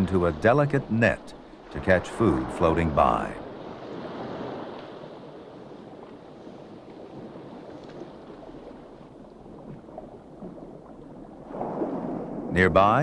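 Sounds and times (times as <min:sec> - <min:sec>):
sea water rushing: 0:00.0 - 0:13.0
faint ticks: 0:07.8 - 0:08.1.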